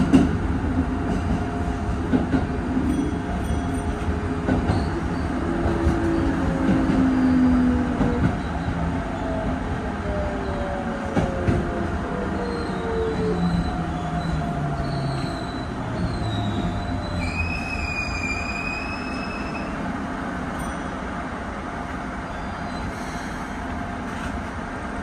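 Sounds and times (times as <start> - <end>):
high squeal of wheels: 12.4 - 19.9, 22.2 - 24.3.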